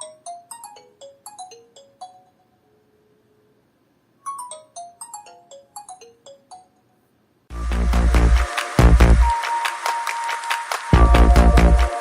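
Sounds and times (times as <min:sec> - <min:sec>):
phone ringtone bell-like notes: 0:04.2 - 0:06.9.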